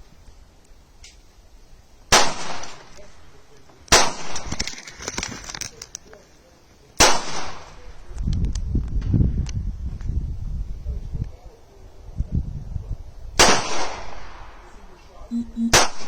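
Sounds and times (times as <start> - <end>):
pistol shots with echo: 3.9 - 4.4, 13.4 - 14.4.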